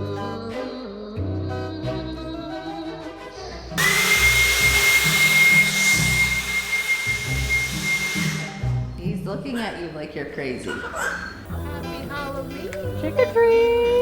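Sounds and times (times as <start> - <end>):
background music: 0.0 - 14.0
air blower whining: 3.8 - 9.0.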